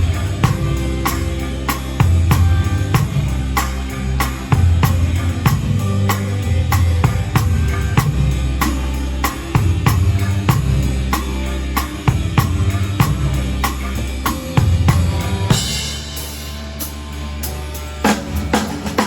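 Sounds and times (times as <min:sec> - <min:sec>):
backing song bass notes: 0:00.0 - 0:19.0
drum kit beat: 0:00.0 - 0:19.0.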